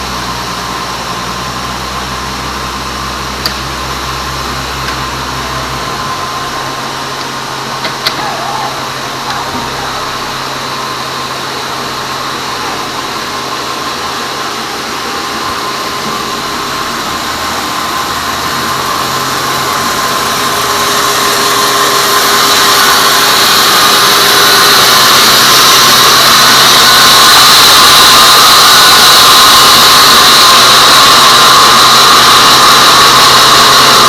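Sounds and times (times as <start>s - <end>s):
band saw sawing timber: 1.5s - 34.0s.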